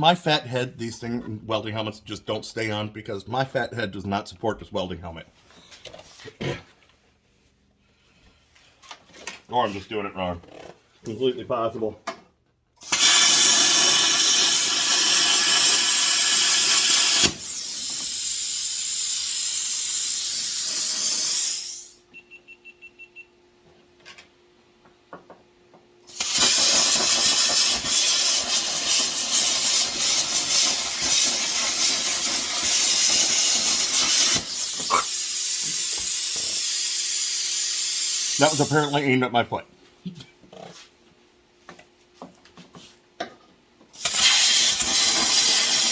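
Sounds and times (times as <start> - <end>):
welding machine hum: 12.8 - 21.9, 26.1 - 38.8, 44.0 - 45.9
welding arc crackling hiss: 12.8 - 22.0, 26.1 - 39.0, 43.9 - 45.9.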